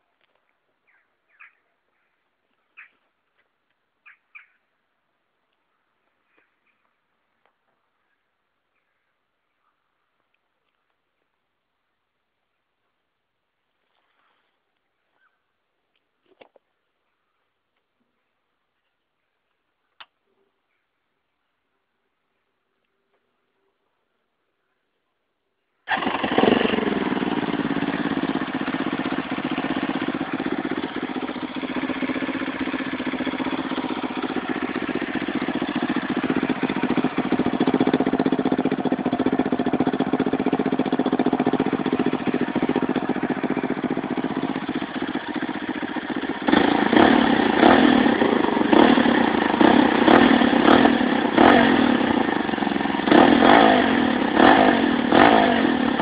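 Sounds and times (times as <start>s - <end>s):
engine revving: 25.9s - 56.0s
motorcycle engine idling: 25.9s - 56.0s.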